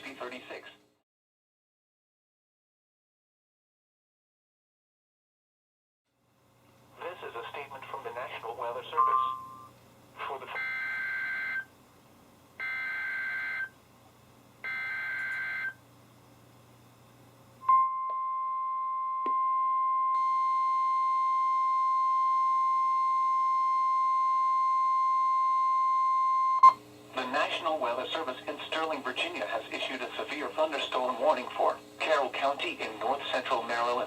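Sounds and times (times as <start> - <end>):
steady warning alarm tone: 9.0 - 9.7, 10.6 - 11.7, 12.6 - 13.8, 14.6 - 15.8, 17.6 - 26.8.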